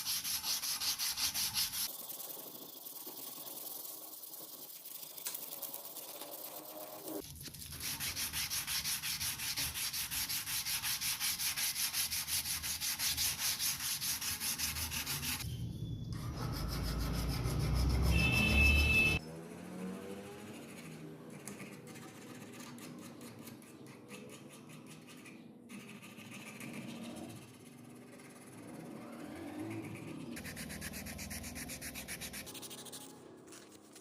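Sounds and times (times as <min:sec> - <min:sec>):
sandpaper rubbing: 0:00.0 - 0:15.4, 0:16.2 - 0:18.4, 0:29.6 - 0:34.0.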